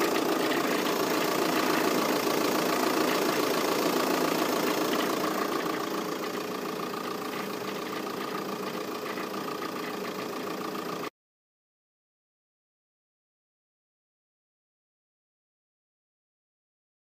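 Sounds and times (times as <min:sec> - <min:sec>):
diesel engine idling: 0:00.0 - 0:11.1
steady whine: 0:00.0 - 0:11.1.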